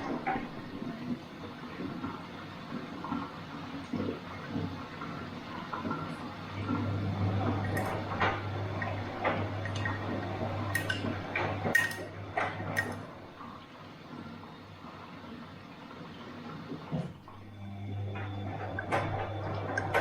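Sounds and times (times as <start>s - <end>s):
washing machine motor humming: 0.0s - 20.0s
water and laundry sloshing: 0.0s - 20.0s.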